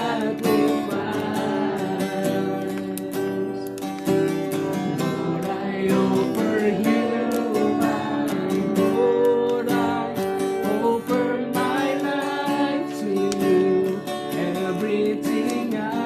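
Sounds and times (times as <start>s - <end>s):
strummed acoustic guitar music: 0.0s - 16.0s.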